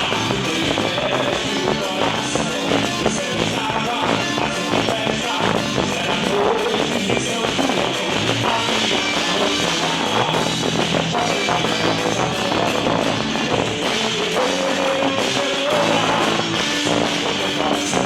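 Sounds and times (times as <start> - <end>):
drums: 0.0 - 18.0
loud band music: 0.0 - 18.0.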